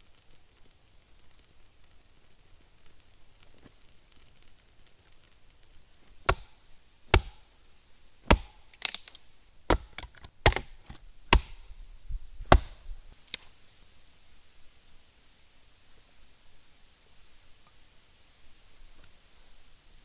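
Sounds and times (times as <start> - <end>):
wood being chopped: 6.1 - 7.6, 8.2 - 11.8, 12.4 - 13.4.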